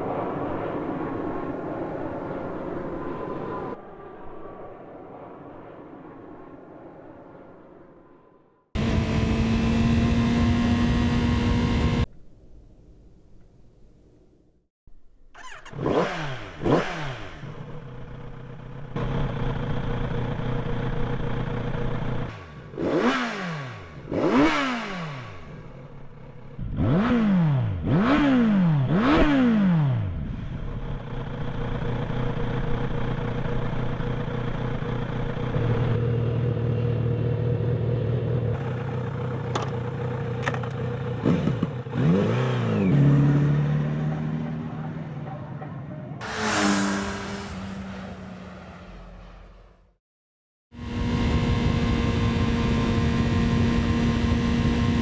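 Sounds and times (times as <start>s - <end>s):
motorcycle engine revving: 8.8s - 12.1s, 15.0s - 49.9s, 50.8s - 55.0s.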